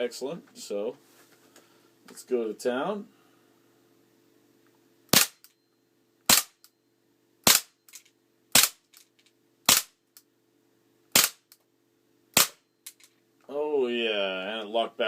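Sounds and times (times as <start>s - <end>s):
airsoft pistol shots: 5.1s - 5.5s, 6.3s - 6.6s, 7.4s - 7.8s, 8.5s - 8.8s, 9.7s - 10.0s, 11.2s - 11.5s, 12.4s - 12.6s.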